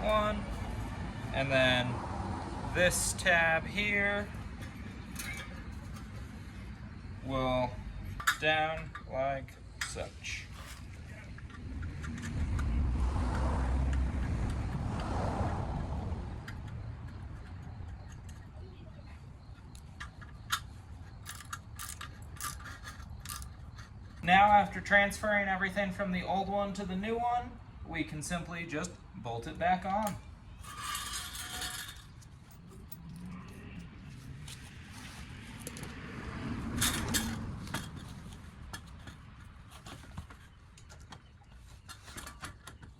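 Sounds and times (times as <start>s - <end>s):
vehicle rumbling by: 0.0s - 8.3s, 10.2s - 19.5s, 30.5s - 39.9s
metal tools clinking: 2.9s - 6.4s, 7.5s - 12.3s, 19.5s - 25.2s, 30.0s - 33.2s, 36.8s - 42.9s.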